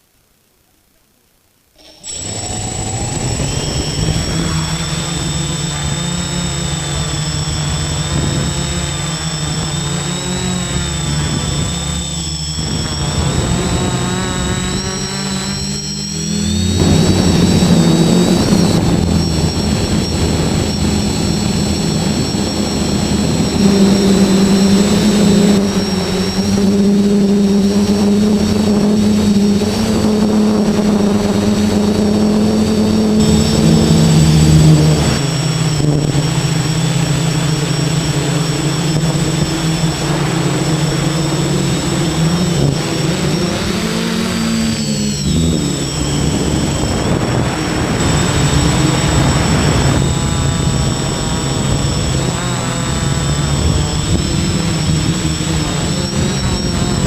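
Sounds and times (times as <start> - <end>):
drone motors buzzing and whining: 1.8 - 57.0
wind buffeting microphone: 16.6 - 32.4, 45.3 - 57.0.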